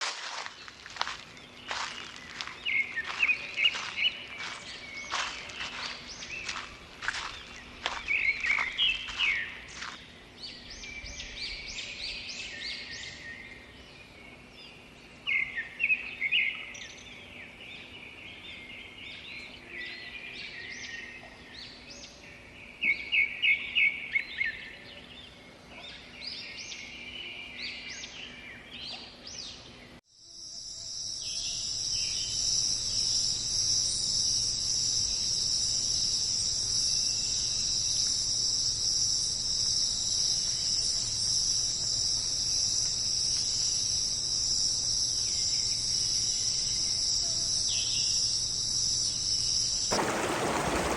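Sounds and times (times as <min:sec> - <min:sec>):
forest birds singing: 0:00.0 - 0:30.0, 0:30.7 - 0:50.9
high-pitched insect chorus: 0:00.2 - 0:10.1, 0:30.2 - 0:50.9.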